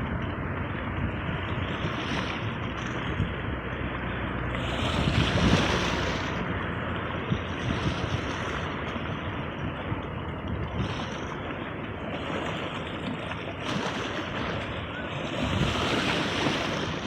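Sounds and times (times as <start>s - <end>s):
sea waves washing on shore: 0.0s - 17.0s.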